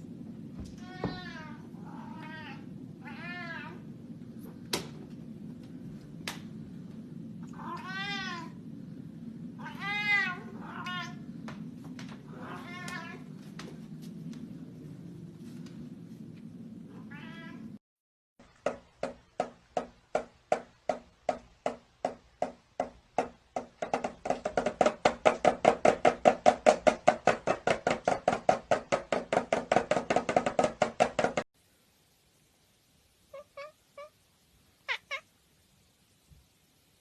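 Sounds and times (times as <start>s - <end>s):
cat meowing: 0.8s - 3.8s, 7.4s - 8.6s, 9.6s - 11.2s, 12.3s - 13.2s, 17.0s - 17.8s, 33.3s - 34.2s, 34.8s - 35.3s
cat clipped repeated calls: 34.8s - 35.3s.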